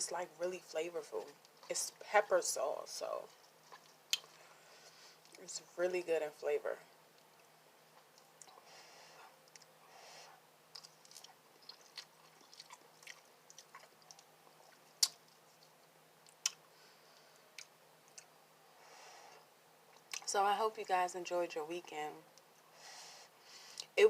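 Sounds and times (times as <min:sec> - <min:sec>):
person chewing noodles: 0:03.3 - 0:05.4, 0:07.9 - 0:09.8, 0:10.7 - 0:16.6.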